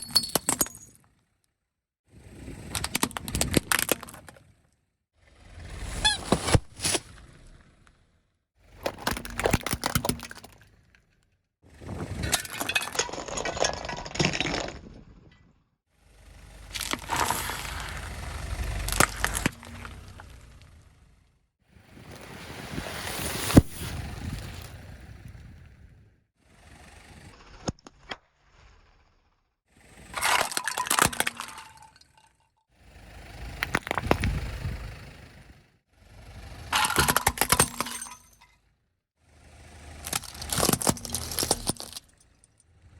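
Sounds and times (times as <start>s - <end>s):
brittle objects cracking under tyre: 2.6s - 4.4s, 8.7s - 11.2s, 12.1s - 15.2s, 16.6s - 20.6s, 30.1s - 32.2s, 36.8s - 38.4s, 39.9s - 42.5s.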